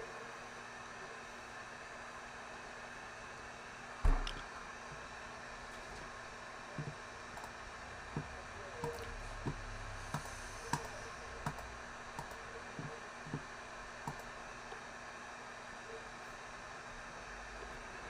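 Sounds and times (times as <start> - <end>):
steady low hiss: 0.0 - 18.0
computer mouse clicks: 8.8 - 13.4, 14.0 - 14.4.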